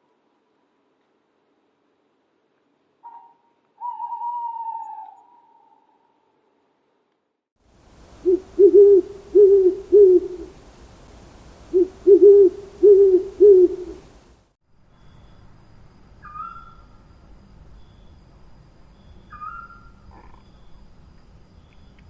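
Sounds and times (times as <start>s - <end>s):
owl hooting: 3.0s - 5.8s, 8.0s - 14.2s
light hiss: 7.6s - 14.4s.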